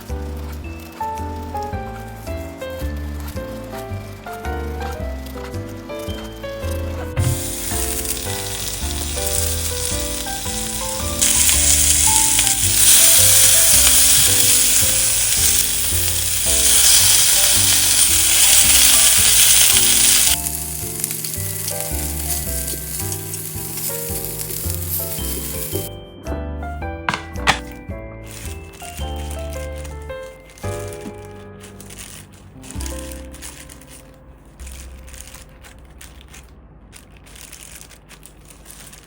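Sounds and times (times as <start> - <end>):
background music: 0.0 - 34.2
food sizzling in a frying pan: 7.2 - 25.9.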